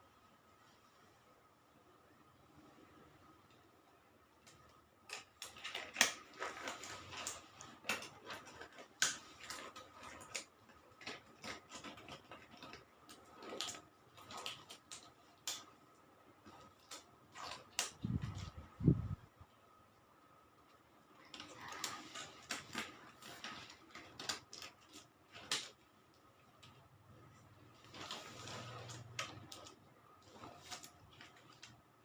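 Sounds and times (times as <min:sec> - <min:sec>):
rustling of small objects: 0:05.2 - 0:19.2, 0:21.0 - 0:32.0.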